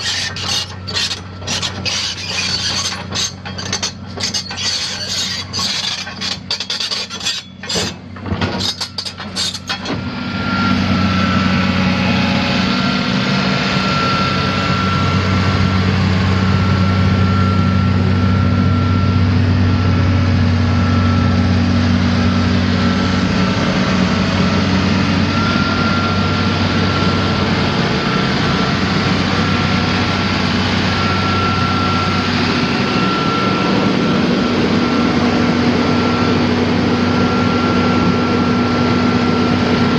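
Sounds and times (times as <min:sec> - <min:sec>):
scraping and knocking: 0:00.0 - 0:10.0
excavator diesel engine running: 0:00.0 - 0:39.9.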